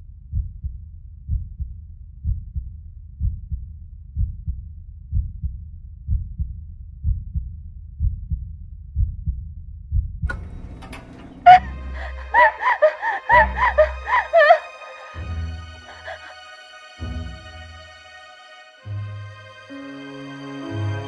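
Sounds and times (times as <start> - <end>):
slow heartbeat thumps: 0.3 - 10.3.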